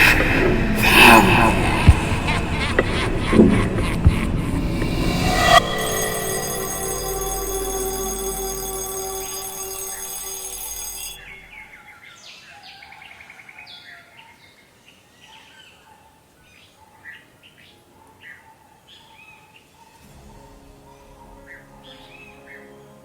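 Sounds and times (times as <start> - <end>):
low music: 0.0 - 11.5
ringing many-toned sound: 0.8 - 11.6.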